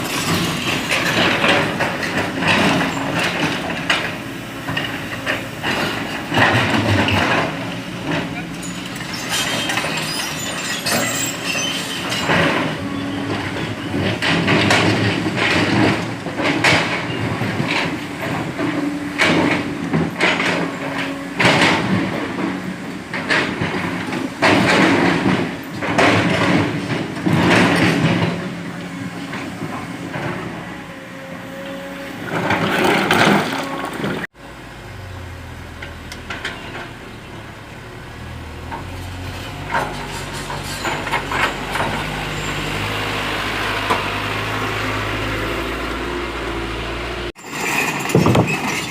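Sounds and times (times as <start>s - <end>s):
heavy diesel engines running: 0.0s - 48.9s.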